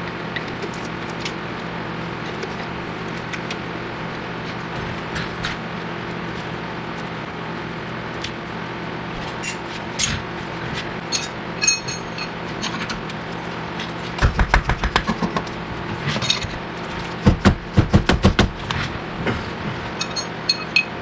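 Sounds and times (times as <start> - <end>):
metal tools clinking: 11.1 - 12.9, 20.0 - 21.0.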